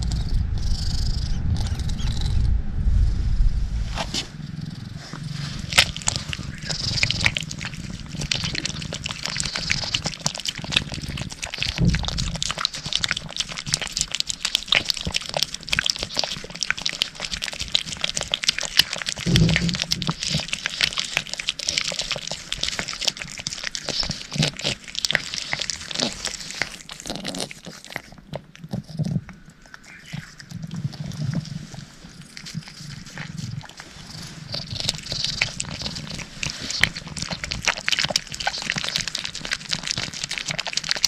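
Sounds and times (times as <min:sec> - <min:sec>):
deep bumps: 0:00.0 - 0:08.4
cat licking and smacking: 0:05.4 - 0:41.0.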